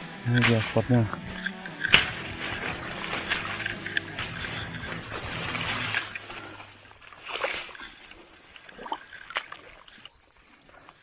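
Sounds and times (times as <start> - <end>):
background music: 0.0 - 6.5
water sloshing and splashing: 0.4 - 11.0.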